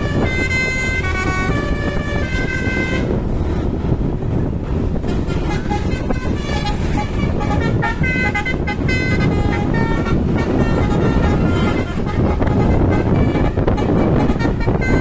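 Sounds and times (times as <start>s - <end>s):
bus multi-tone horn tune: 0.0s - 4.2s, 4.9s - 15.0s
engine and road rumble: 0.0s - 15.0s.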